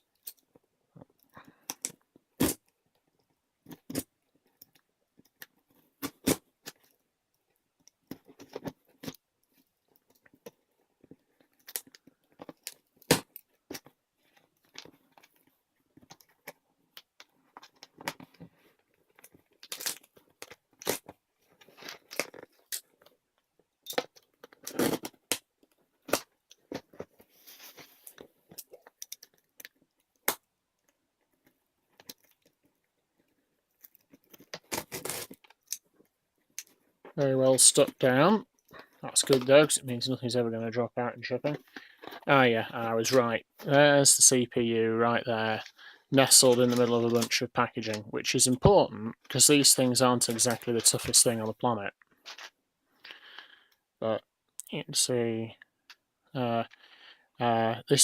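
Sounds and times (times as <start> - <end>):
cardboard crackling and crunching: 33.7 - 35.7
tape and flaps tearing: 33.9 - 35.8.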